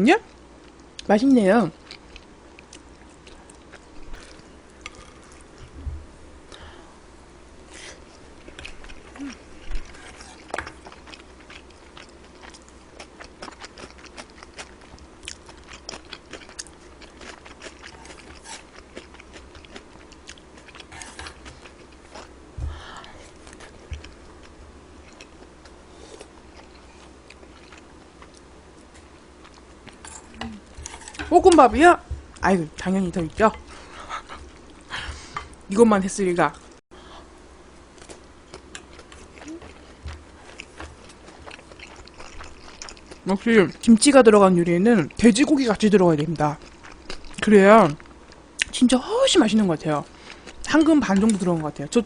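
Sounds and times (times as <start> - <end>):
person chewing food: 1.8 - 5.7, 7.7 - 31.3, 37.9 - 43.9, 46.2 - 48.7, 50.1 - 51.6.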